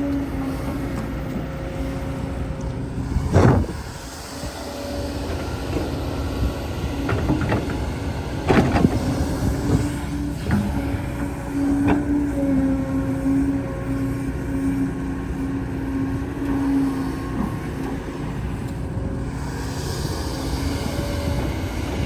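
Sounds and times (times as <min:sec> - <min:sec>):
excavator engine running: 0:00.0 - 0:22.0
excavator knocking and scraping earth: 0:00.1 - 0:13.2.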